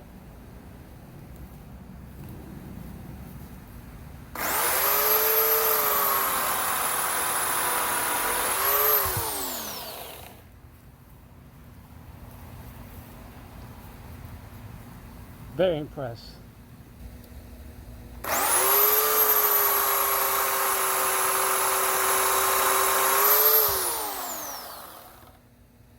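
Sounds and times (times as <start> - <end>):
electric chainsaw motor whining: 4.4 - 10.5, 18.2 - 25.4.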